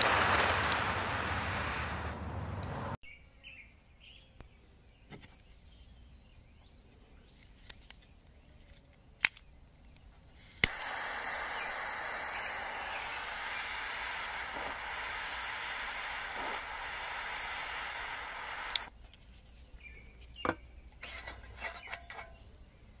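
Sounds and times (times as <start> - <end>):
torch lighter flame hissing: 0.0 - 2.9, 10.5 - 18.9
lighter click: 10.6 - 16.9, 17.7 - 18.9.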